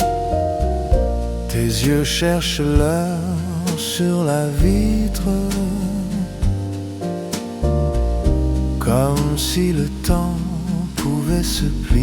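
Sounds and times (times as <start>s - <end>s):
piano chords: 0.0s - 12.0s
upright bass notes: 0.0s - 12.0s.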